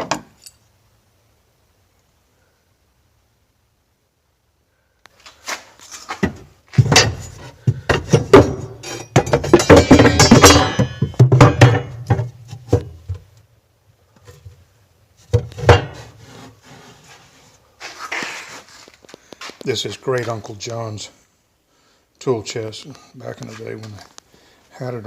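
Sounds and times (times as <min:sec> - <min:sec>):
tools clattering and scraping: 0:05.4 - 0:13.2, 0:15.3 - 0:19.6
wooden and metal knocks: 0:06.2 - 0:13.3, 0:15.3 - 0:16.2.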